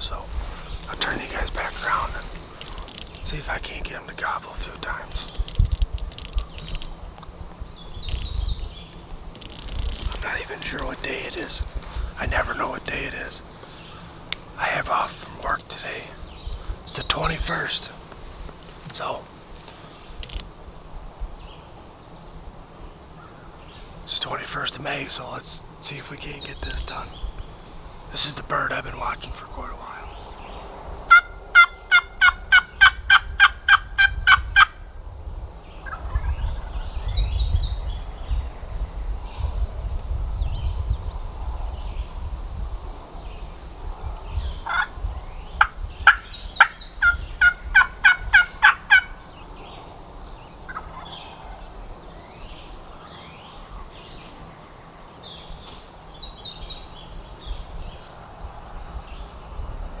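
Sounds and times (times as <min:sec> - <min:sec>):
turkey yelps: 0:31.1 - 0:34.7, 0:46.0 - 0:49.2
faint turkey gobble: 0:31.1 - 0:34.8, 0:44.6 - 0:45.0, 0:45.6 - 0:49.2, 0:50.7 - 0:51.7.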